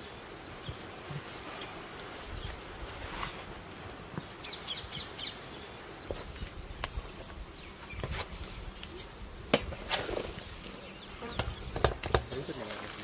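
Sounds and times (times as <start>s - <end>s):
outdoor background noise: 0.0s - 13.0s
bird chirping: 4.2s - 6.3s, 7.2s - 8.1s, 10.7s - 12.0s.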